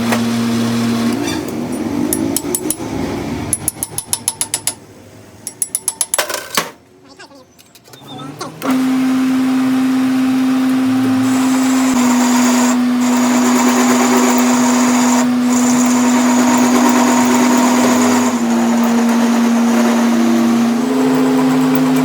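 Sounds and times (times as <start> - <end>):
lathe motor hum: 8.6 - 22.0.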